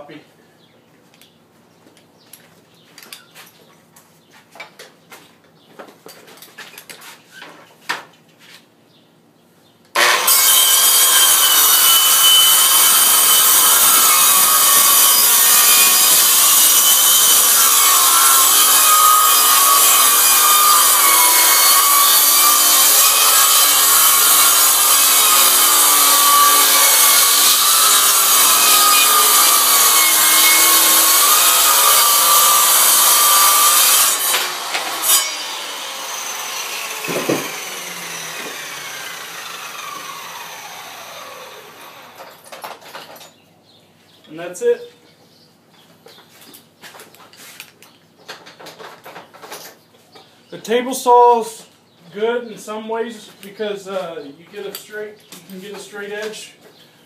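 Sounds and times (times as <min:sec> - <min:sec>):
circular saw cutting board: 0:10.0 - 0:42.4
knocks: 0:37.0 - 0:37.6.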